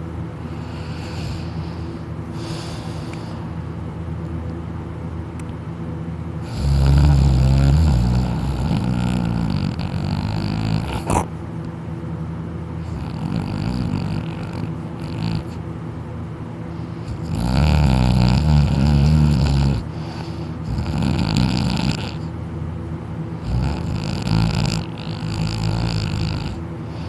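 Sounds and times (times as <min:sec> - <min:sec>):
steady low hum: 0:00.0 - 0:27.0
person snoring: 0:06.4 - 0:11.3, 0:12.8 - 0:15.6, 0:17.1 - 0:22.3, 0:23.4 - 0:27.0.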